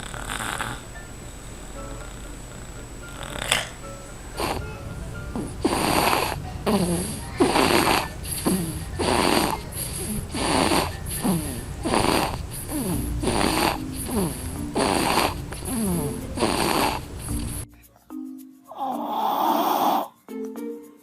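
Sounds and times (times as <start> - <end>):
baby snorting with squeaks: 5.4 - 17.6, 18.7 - 20.2.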